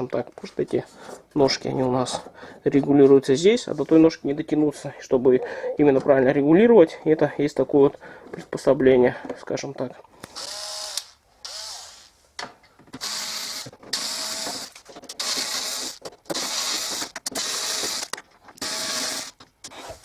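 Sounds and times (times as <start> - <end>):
cordless power screwdriver whining: 10.3 - 12.1, 13.0 - 19.4.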